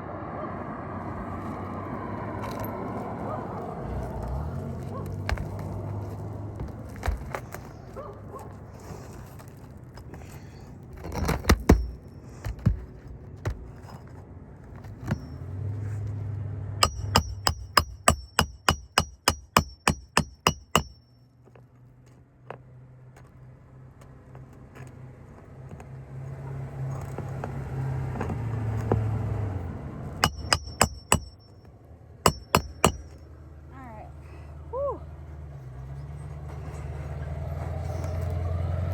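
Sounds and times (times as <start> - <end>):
hammer striking roofing nails: 11.0 - 13.6, 15.0 - 15.3, 16.8 - 21.0, 30.2 - 31.5, 32.3 - 33.1.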